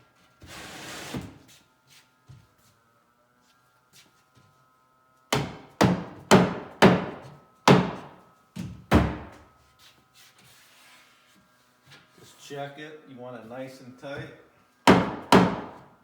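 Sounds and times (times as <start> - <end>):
sharp knocks on wood: 5.3 - 9.4, 14.9 - 15.8.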